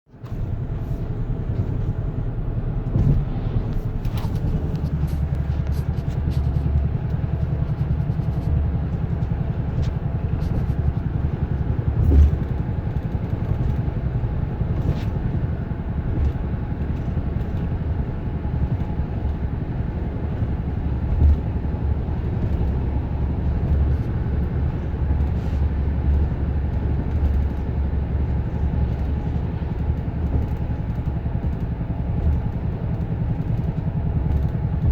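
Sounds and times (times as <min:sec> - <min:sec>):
car driving low rumble: 0:00.1 - 0:34.9
fast pulsing thump: 0:02.8 - 0:23.8.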